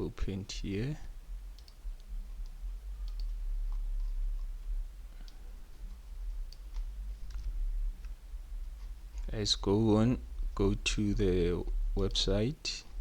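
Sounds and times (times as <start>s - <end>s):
low electrical hum: 0.0s - 13.0s
computer mouse clicks: 1.5s - 4.2s, 5.2s - 8.2s.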